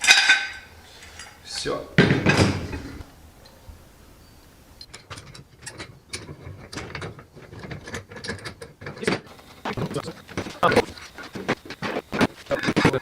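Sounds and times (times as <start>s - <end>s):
hand tools on metal: 0.0s - 3.7s.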